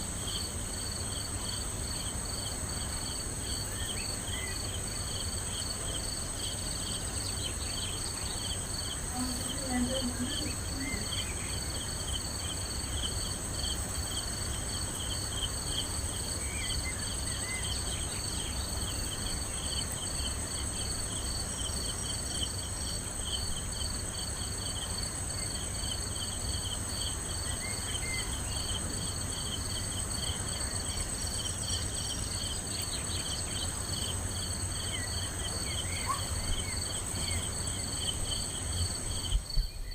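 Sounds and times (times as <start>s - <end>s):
crickets trilling: 0.0s - 39.9s
rhythmic insect chirps: 0.2s - 39.9s.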